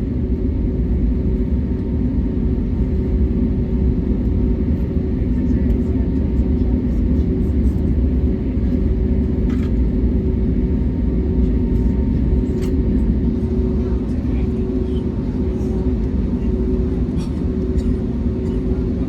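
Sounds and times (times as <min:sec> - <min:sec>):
aircraft cabin engine rumble: 0:00.0 - 0:19.0
constant hum: 0:00.0 - 0:19.0.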